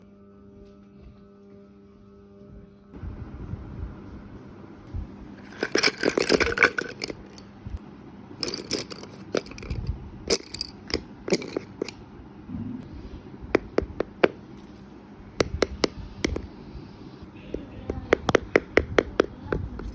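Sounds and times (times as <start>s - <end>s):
scraping and crinkling of craft materials: 5.4s - 7.5s, 8.4s - 12.0s.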